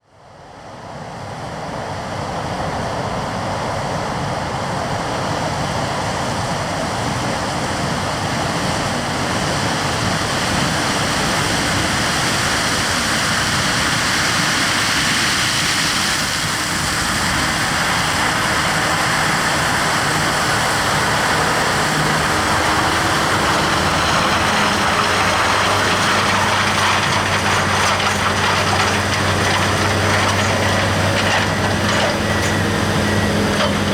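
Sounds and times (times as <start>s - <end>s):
engine hum: 8.0s - 33.9s
heavy farm machinery running: 8.2s - 33.9s.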